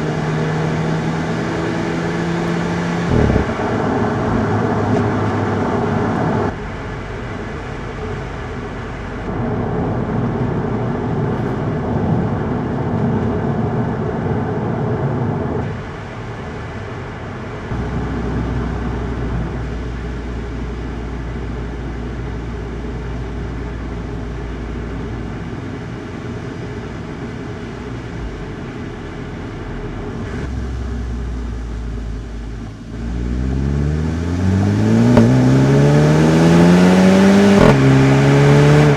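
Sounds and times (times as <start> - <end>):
low engine hum: 0.0 - 38.9
road and tyre rumble: 0.0 - 38.9.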